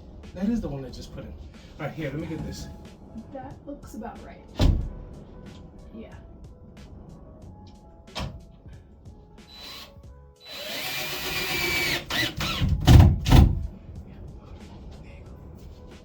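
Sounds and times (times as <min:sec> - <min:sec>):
power drill driving a screw: 0:09.5 - 0:13.4
loud knocks: 0:12.4 - 0:13.7.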